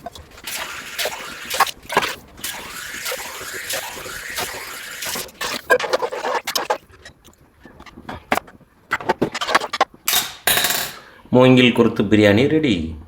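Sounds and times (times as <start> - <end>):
steady hiss in pot: 0.0 - 6.9
utensil scraping and knocking pot: 0.0 - 11.1.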